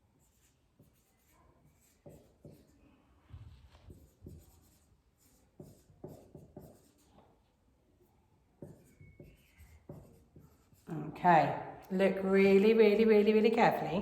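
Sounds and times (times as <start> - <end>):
pen writing on a board: 0.2 - 7.5, 8.5 - 10.9.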